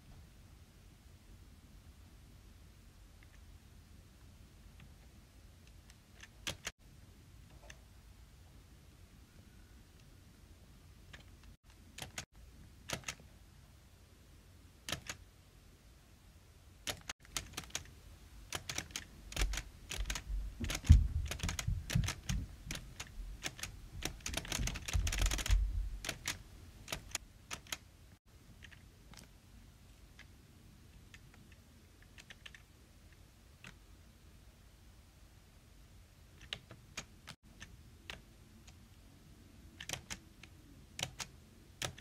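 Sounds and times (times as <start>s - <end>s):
sharp clicks: 5.7s - 6.7s, 14.9s - 15.2s, 18.5s - 27.8s
low thumps: 20.1s - 26.1s.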